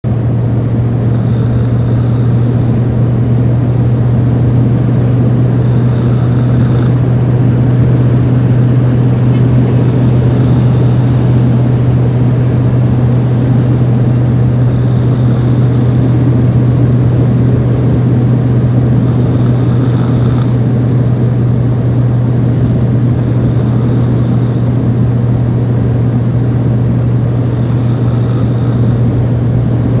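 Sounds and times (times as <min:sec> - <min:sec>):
loud low hum: 0:00.0 - 0:30.0
person snoring softly: 0:01.0 - 0:04.5, 0:05.4 - 0:08.4, 0:09.4 - 0:11.6, 0:14.5 - 0:17.7, 0:18.9 - 0:20.8, 0:23.1 - 0:24.8, 0:27.0 - 0:29.3.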